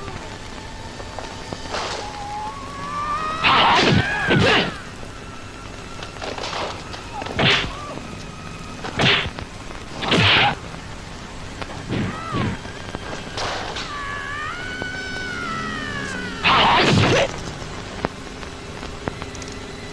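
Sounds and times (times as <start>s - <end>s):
punch and kick hits: 9.0s - 9.3s.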